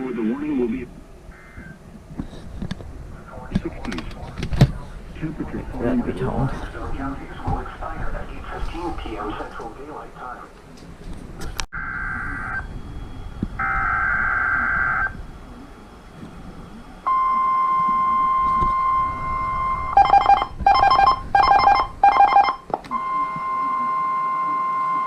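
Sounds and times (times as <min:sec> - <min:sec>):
warbling data tones: 0:11.8 - 0:24.7
steady high alert tone: 0:17.0 - 0:25.0
buzzing beep bursts: 0:17.1 - 0:25.0.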